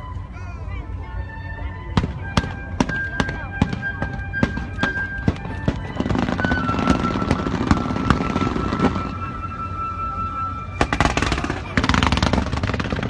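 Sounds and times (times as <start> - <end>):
fireworks banging: 2.0 - 9.6, 10.8 - 13.0.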